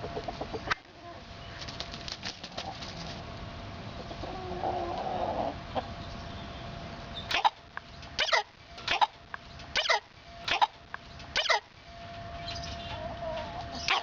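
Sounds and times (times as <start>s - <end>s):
hen murmuring call: 7.3s - 7.6s, 8.2s - 9.2s, 9.8s - 10.8s, 11.4s - 11.7s.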